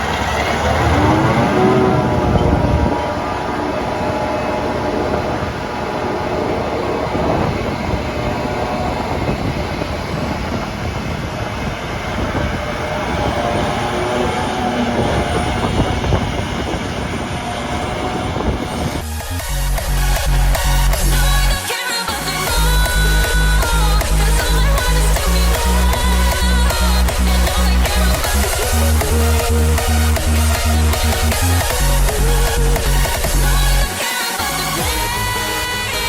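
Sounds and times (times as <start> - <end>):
heavy farm machinery running: 0.0 - 21.6.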